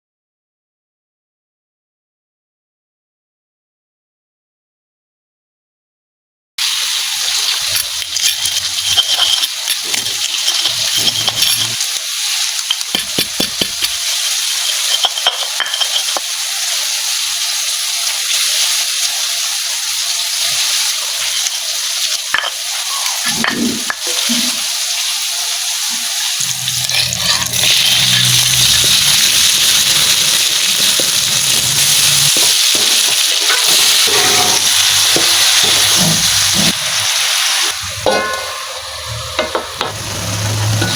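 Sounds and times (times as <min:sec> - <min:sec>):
food sizzling in hot oil: 0:06.6 - 0:40.9
spatula clicking and scraping: 0:07.5 - 0:16.3, 0:20.5 - 0:24.1.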